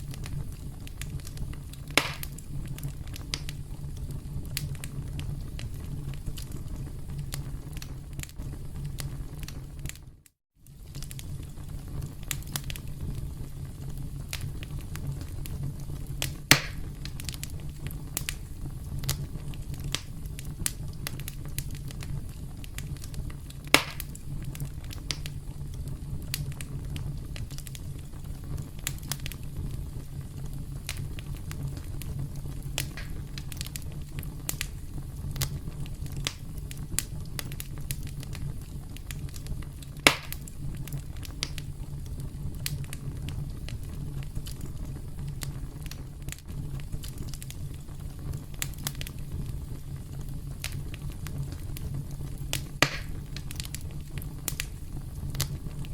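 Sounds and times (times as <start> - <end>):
loud sharp fire pops: 0.0 - 10.0, 10.7 - 55.9
campfire flames rumbling: 0.0 - 55.9
fire crackling: 0.0 - 55.9.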